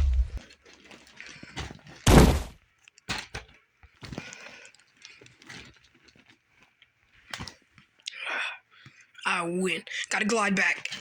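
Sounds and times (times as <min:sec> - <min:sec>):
loud crash: 0:00.0 - 0:00.4, 0:02.1 - 0:02.6.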